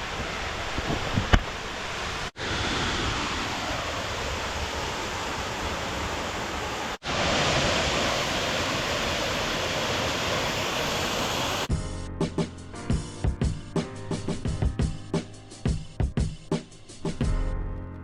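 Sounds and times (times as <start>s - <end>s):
waterfall rushing: 0.0s - 11.7s.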